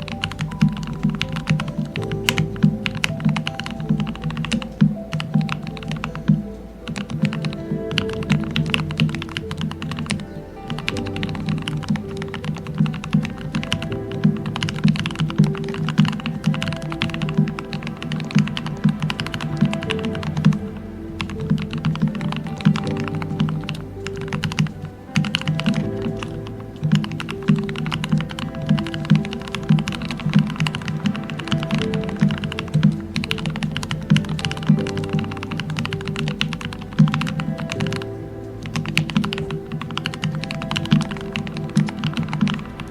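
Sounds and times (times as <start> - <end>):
soft background music: 0.0 - 42.9
fast mechanical keyboard typing: 38.7 - 42.9.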